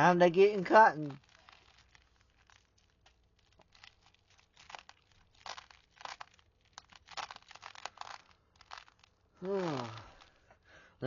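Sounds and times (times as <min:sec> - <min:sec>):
beaded necklace crinkling: 0:00.0 - 0:10.7.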